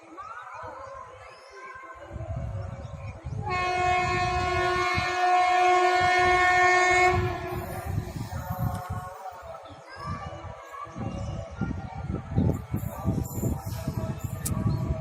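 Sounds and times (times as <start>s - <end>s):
train rumbling and clattering: 2.1s - 15.0s
locomotive horn blast: 3.5s - 7.5s.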